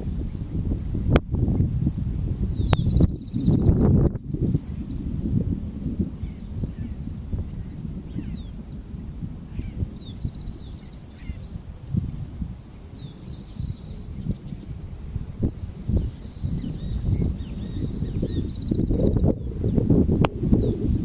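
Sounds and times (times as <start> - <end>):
wind rumble on microphone: 0.0 - 21.0
birds chirping and trilling: 1.6 - 21.0.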